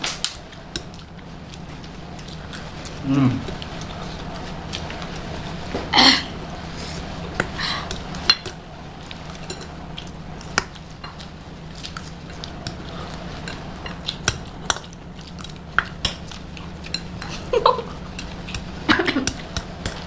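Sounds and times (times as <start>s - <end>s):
steady low hum: 0.0s - 20.0s
spoons clinking on plates: 9.2s - 11.3s, 12.1s - 20.0s.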